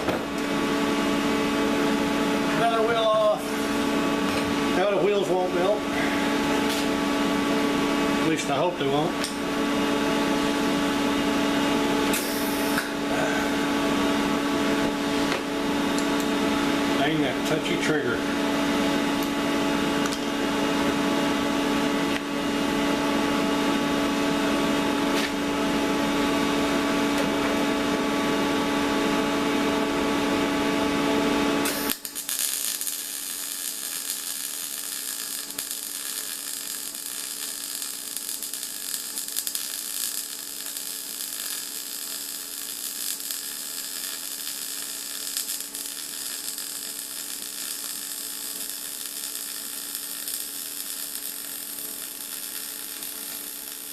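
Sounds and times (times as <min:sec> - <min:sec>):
welder buzzing with crackle: 0:00.0 - 0:53.9.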